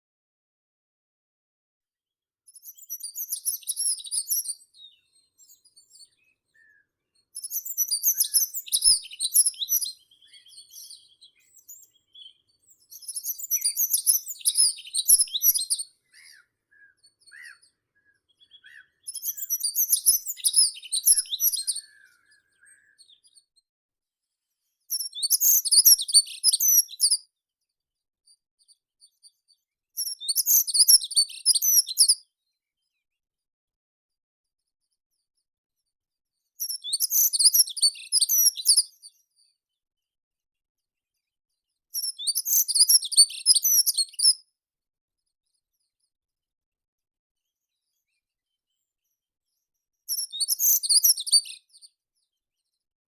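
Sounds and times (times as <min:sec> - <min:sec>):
faint bird chirps: 0:02.5 - 0:23.7, 0:24.6 - 0:27.4, 0:28.3 - 0:33.1, 0:36.3 - 0:39.6, 0:41.9 - 0:44.5, 0:47.4 - 0:52.9.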